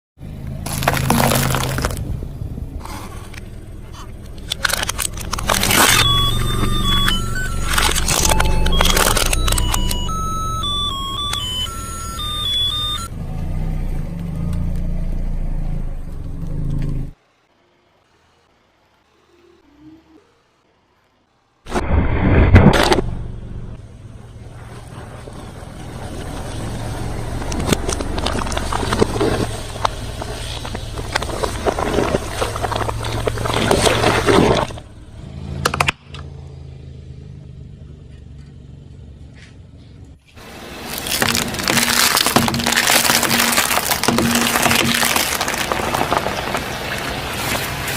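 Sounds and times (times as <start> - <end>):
car engine rumbling: 0.2 - 17.5, 21.8 - 47.9
tyre crushing objects: 0.5 - 2.1, 4.6 - 12.7, 27.2 - 34.8, 40.4 - 47.9
short stepped melody: 5.8 - 13.1.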